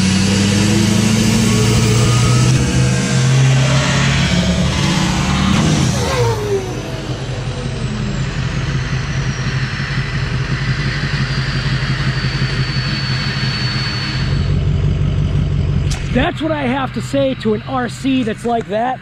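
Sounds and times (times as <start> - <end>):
engine idling: 0.0 - 19.0
faint high whistle: 10.8 - 14.6.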